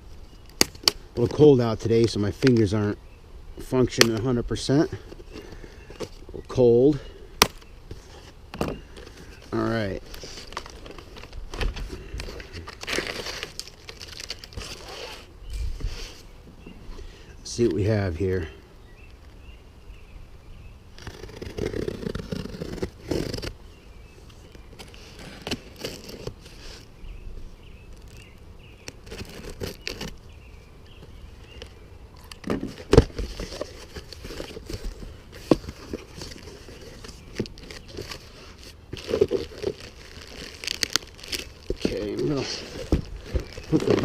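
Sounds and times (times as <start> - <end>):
packaging scraping and crackling: 7.4 - 15.3, 21.0 - 23.6, 24.5 - 26.9, 27.9 - 30.3, 30.9 - 44.0.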